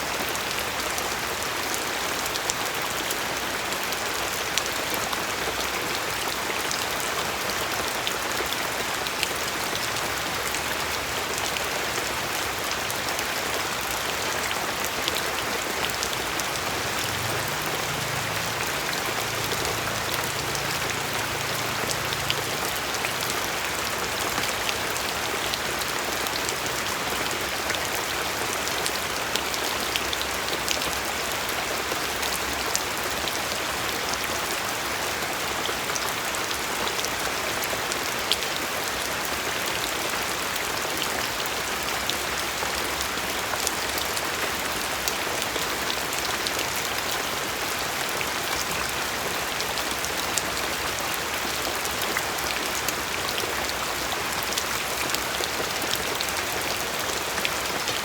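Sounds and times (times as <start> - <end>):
steady rain falling: 0.0 - 58.0
raindrops ticking on a surface: 0.1 - 58.0.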